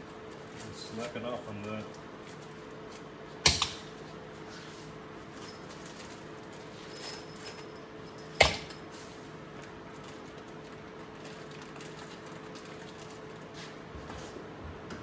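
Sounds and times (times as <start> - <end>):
steady low hum: 0.0 - 15.0
sharp clack of tool: 3.5 - 3.8, 8.4 - 8.8.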